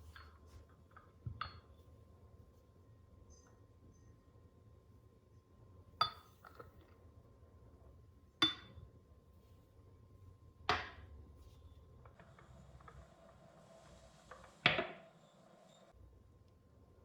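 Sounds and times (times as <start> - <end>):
glassware clinking: 8.4 - 8.8.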